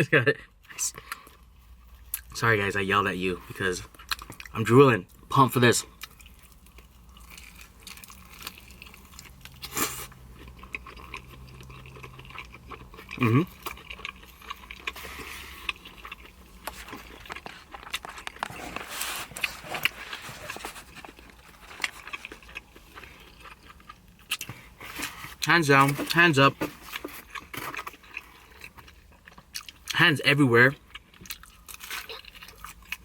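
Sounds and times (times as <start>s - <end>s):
person chewing food: 3.9s - 4.5s, 5.9s - 30.0s, 30.8s - 33.0s.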